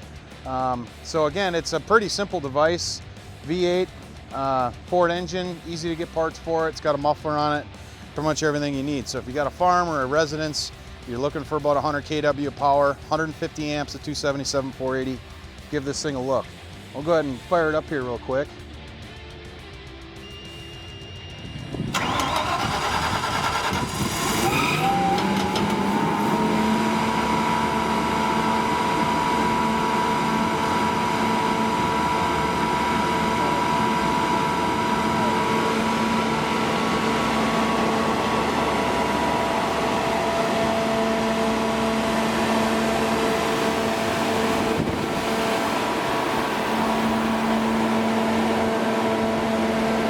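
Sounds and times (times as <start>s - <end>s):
steady whine: 19.2s - 50.0s
generator engine starting up: 21.3s - 50.0s.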